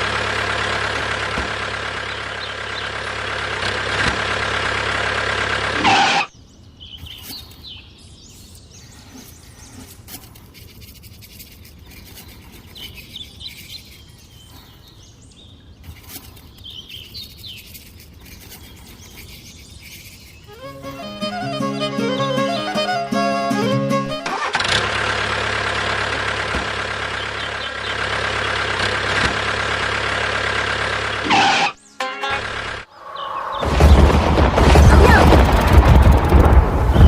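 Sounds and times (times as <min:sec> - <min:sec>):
vehicle engine running: 0:00.0 - 0:06.3, 0:20.4 - 0:37.0
birds chirping: 0:00.0 - 0:24.5, 0:25.4 - 0:37.0.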